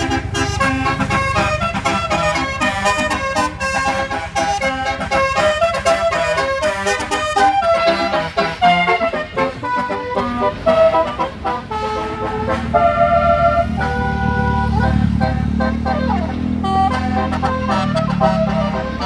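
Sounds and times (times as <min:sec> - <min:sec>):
low engine rumble: 0:00.0 - 0:19.0
musical air horn melody: 0:00.0 - 0:19.0.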